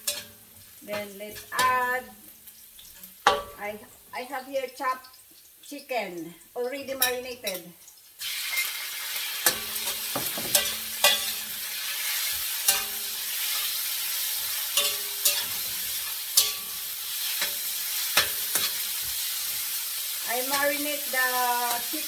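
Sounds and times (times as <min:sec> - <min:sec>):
spatula scraping a pan: 0:00.0 - 0:03.6, 0:09.4 - 0:20.8
chicken sizzling in a pan: 0:00.0 - 0:22.0.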